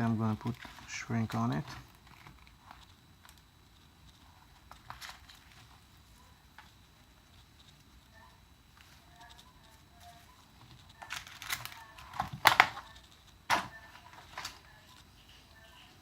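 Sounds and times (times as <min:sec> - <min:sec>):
small parts clicking and rustling: 0:00.4 - 0:05.8, 0:08.8 - 0:15.1.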